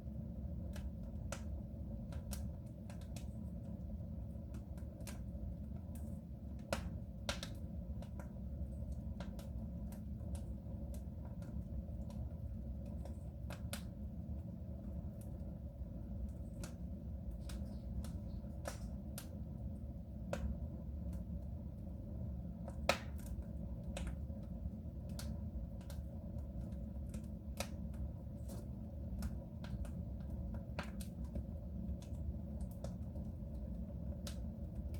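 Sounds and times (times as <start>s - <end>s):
low stove rumble: 0.0s - 34.9s
wood fire crackling and popping: 0.0s - 34.9s.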